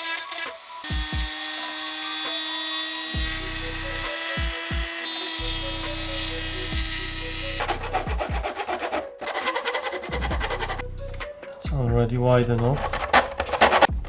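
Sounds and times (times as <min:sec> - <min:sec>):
kick drum beat: 0:00.9 - 0:01.3, 0:04.4 - 0:04.9, 0:08.1 - 0:08.6, 0:10.2 - 0:10.6, 0:11.6 - 0:12.1
electronic music: 0:03.2 - 0:14.0.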